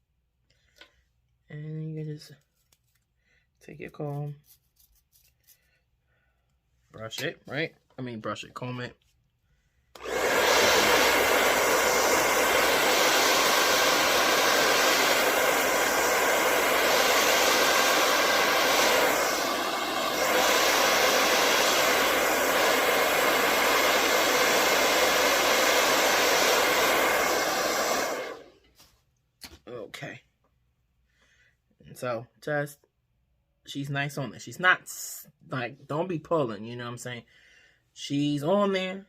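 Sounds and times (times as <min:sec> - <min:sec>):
hair dryer blowing: 0:09.9 - 0:28.7.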